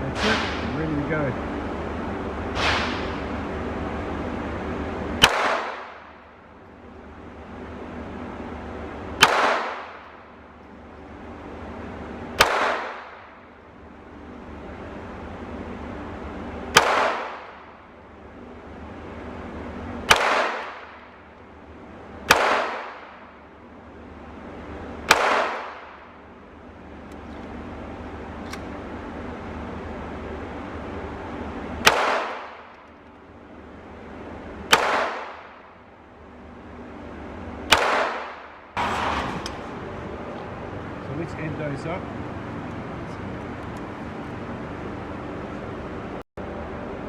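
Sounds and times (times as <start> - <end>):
pistol shots: 2.5 - 3.3, 5.2 - 6.2, 9.2 - 10.2, 12.4 - 13.4, 16.7 - 17.7, 20.0 - 21.2, 22.3 - 23.3, 25.0 - 26.1, 31.8 - 32.7, 34.7 - 35.7, 37.7 - 39.7.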